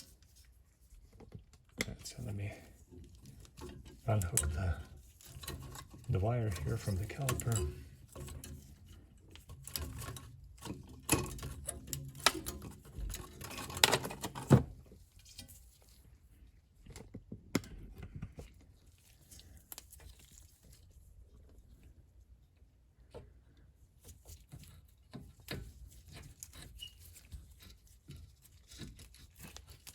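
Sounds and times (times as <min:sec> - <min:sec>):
metal clicks and knocks: 0:03.2 - 0:08.7.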